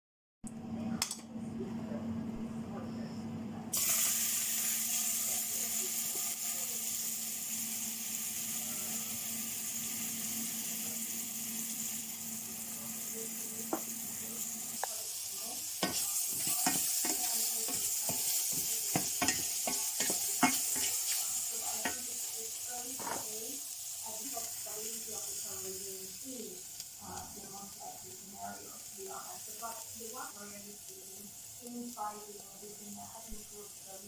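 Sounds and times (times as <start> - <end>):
food sizzling in a pan: 3.7 - 34.0
utensil knocking against pan: 15.8 - 20.9.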